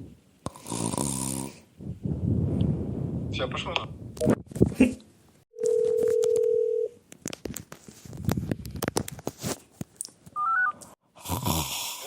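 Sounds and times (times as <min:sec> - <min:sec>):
telephone line tone: 0:05.6 - 0:07.0.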